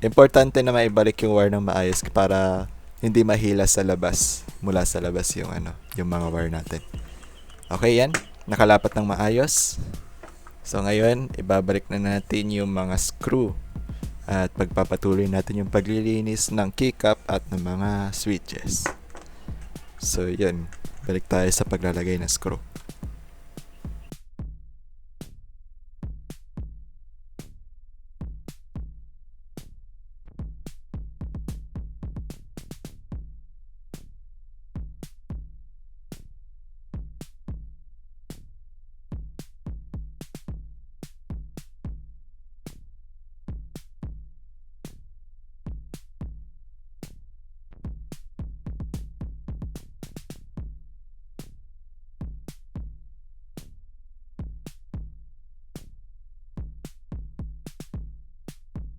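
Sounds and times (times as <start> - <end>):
electronic music: 0.0 - 24.1.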